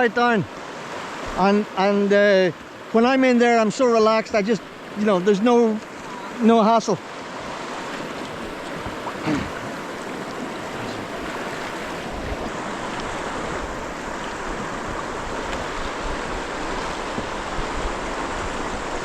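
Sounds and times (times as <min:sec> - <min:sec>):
river current rushing: 0:00.0 - 0:19.0.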